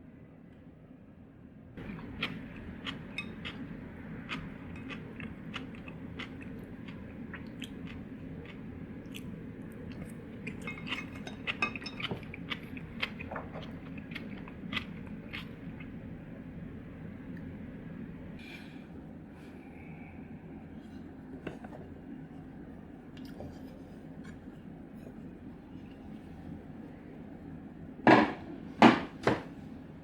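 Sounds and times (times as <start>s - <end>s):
low room hum: 0.0s - 30.0s
chewing: 1.8s - 16.0s.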